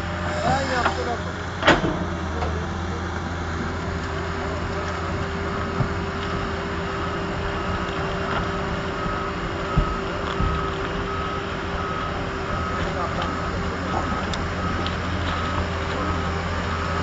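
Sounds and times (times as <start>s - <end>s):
diesel engine running: 0.0s - 17.0s
reversing alarm beeping: 4.3s - 17.0s.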